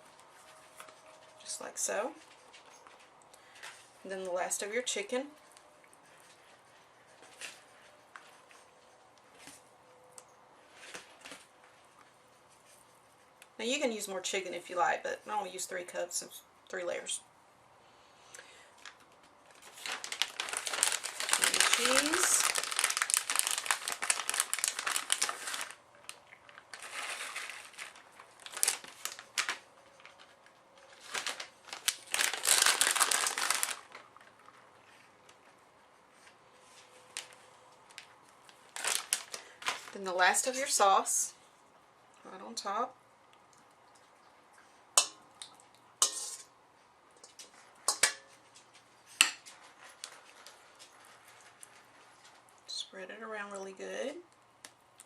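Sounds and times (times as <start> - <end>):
plastic packaging crinkling: 18.8 - 35.5, 36.2 - 40.8.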